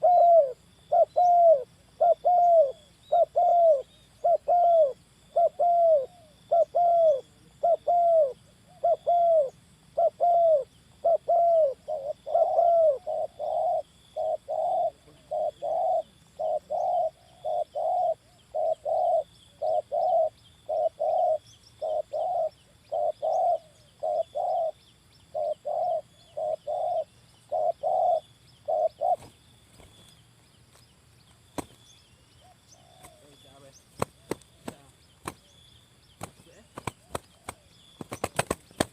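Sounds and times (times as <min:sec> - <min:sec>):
dove cooing: 0:00.0 - 0:30.2, 0:31.6 - 0:35.6, 0:36.2 - 0:38.9.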